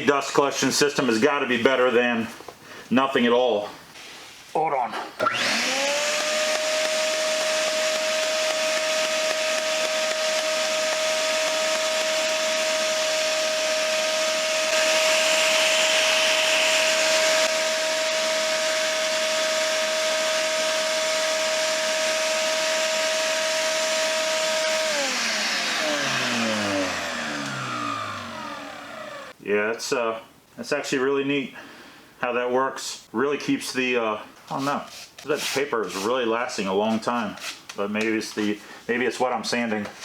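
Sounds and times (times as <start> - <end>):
motor winding down: 5.2 - 29.3
sander whining: 5.2 - 29.4.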